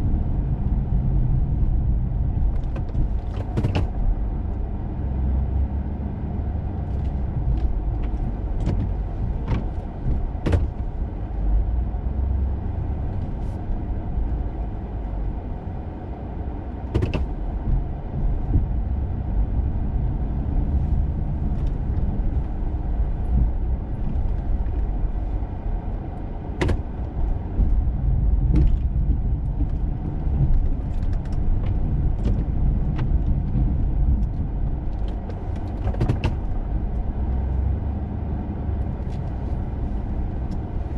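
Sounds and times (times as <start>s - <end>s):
truck engine rumble: 0.0s - 40.9s
plow knocks and clatters: 1.6s - 4.2s, 6.8s - 11.4s, 16.8s - 37.7s.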